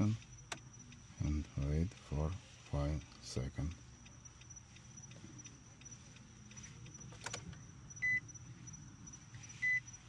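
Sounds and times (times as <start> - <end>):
short high electronic beeps: 8.0 - 8.3, 9.5 - 10.0.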